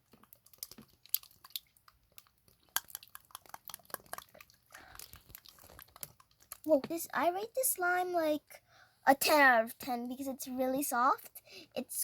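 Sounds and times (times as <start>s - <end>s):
slime squelching by hand: 0.0s - 8.0s.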